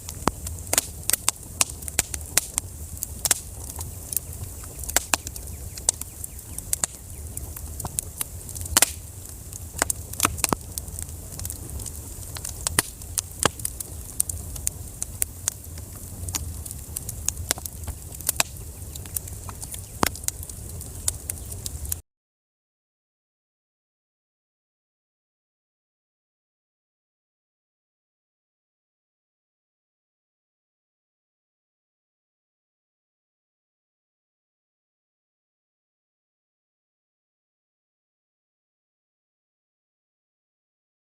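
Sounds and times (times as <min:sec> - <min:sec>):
low rumble of flames: 0:00.0 - 0:22.0
wood fire crackling and popping: 0:00.0 - 0:22.0.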